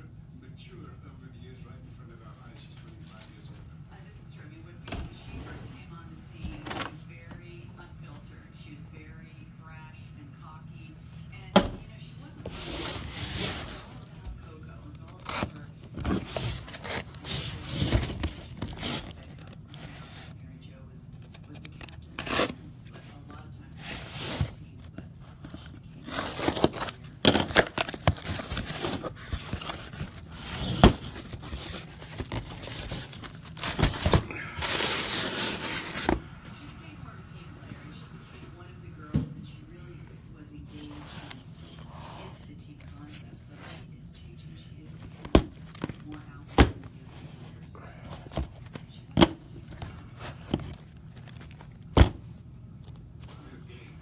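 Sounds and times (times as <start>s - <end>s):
wrapper tearing and crinkling: 26.0s - 36.1s.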